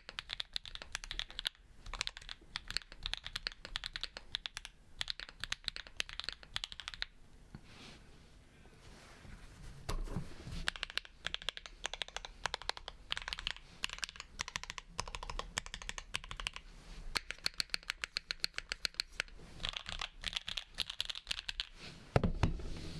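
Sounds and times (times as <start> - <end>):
typing on mechanical keyboard: 0.0 - 7.1, 10.7 - 16.6, 17.2 - 21.7.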